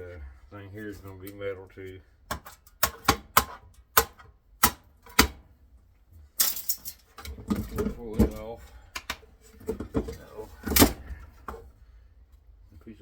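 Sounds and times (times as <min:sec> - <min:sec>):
metal parts clicking: 0:06.4 - 0:07.3.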